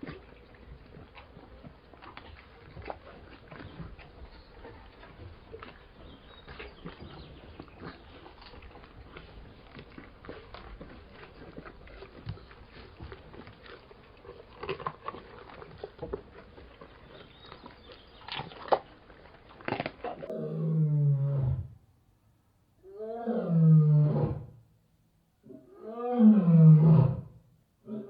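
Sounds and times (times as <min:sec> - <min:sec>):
lion crunching and chewing: 0:00.0 - 0:20.4
lion low roar: 0:19.7 - 0:21.8, 0:22.8 - 0:24.6, 0:25.4 - 0:28.0.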